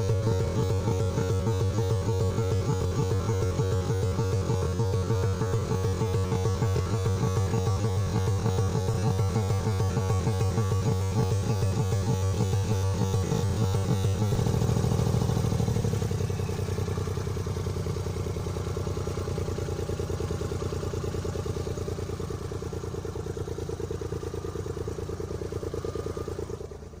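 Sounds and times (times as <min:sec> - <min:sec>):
car engine pulsing throb: 0:00.0 - 0:27.0.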